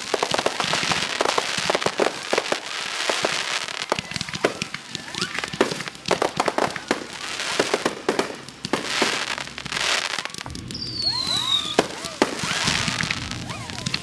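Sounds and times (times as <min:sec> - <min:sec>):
crackling hiss of fireworks: 0:00.0 - 0:14.0
fireworks bangs: 0:00.0 - 0:14.0
firework whistle falling in pitch: 0:10.2 - 0:14.0.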